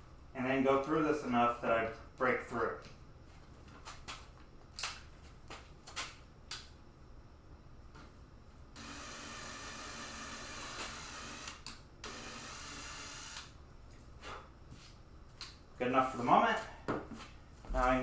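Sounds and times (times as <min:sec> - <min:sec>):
power drill boring a hole: 0:08.8 - 0:13.5.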